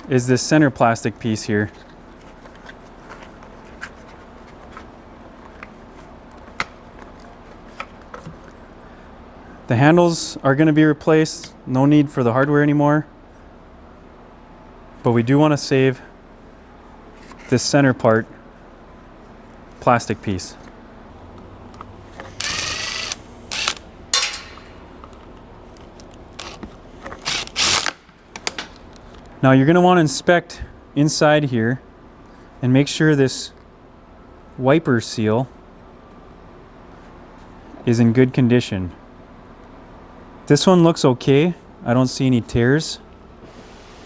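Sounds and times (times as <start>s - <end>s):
low background hum: 0.0s - 44.0s
metal part scraping: 22.2s - 25.1s, 26.4s - 28.0s
sharp click: 22.3s - 25.2s.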